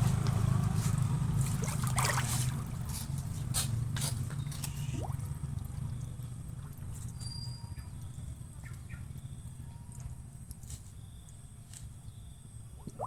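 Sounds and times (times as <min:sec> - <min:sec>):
water trickling and splashing: 0:00.0 - 0:08.2, 0:12.8 - 0:13.0
steady low hum: 0:00.0 - 0:13.0.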